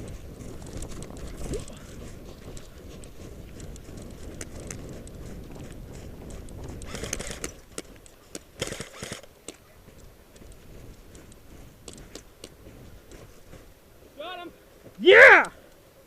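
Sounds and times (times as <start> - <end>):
gear rustling: 0.0 - 14.2
heavy footsteps on snow: 0.0 - 15.4
sharp clicks and cracks: 0.5 - 1.6, 2.4 - 12.6.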